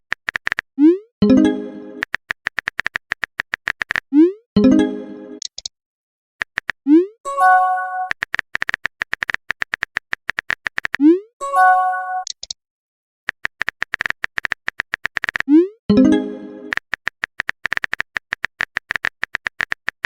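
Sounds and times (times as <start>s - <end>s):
keyboard typing clicks: 0.1s - 4.2s, 5.4s - 5.7s, 6.4s - 7.0s, 8.0s - 11.1s, 12.2s - 12.6s, 13.3s - 20.0s.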